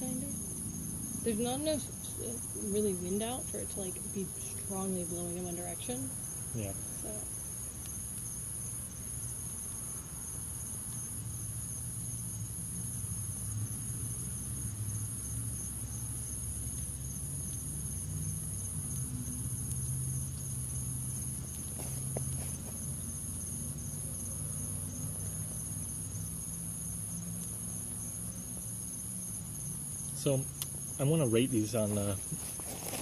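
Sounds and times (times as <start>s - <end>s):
high-pitched pulsing insect chorus: 0.0s - 33.0s.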